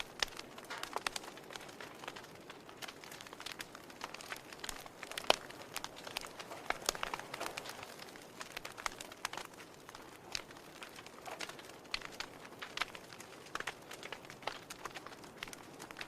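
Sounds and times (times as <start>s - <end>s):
wood fire crackling: 0.0s - 16.0s.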